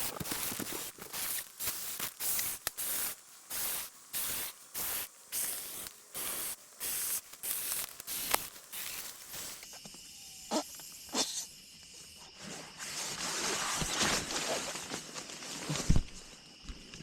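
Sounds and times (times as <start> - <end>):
air hissing into pad valve: 0.0 - 11.7.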